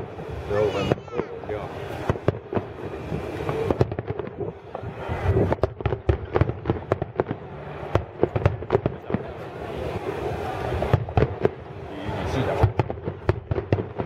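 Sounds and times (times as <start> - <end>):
fireworks bangs and crackling: 0.0 - 14.0.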